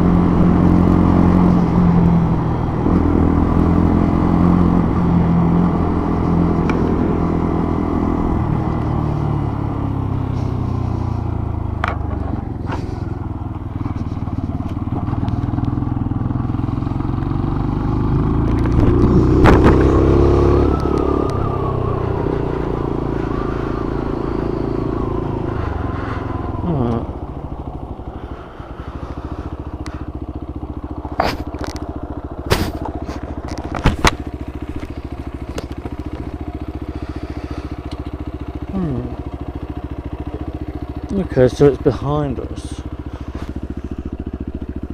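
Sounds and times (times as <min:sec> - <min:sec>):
motorcycle engine revving: 0:00.0 - 0:44.9.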